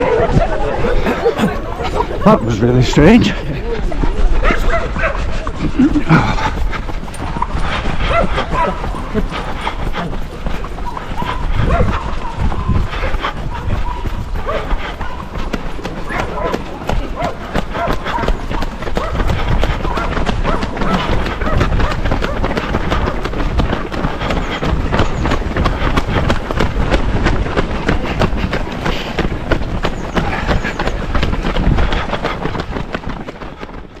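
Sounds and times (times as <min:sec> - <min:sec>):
scattered voices: 0:00.0 - 0:26.3
runners footfalls on a path: 0:00.0 - 0:34.0.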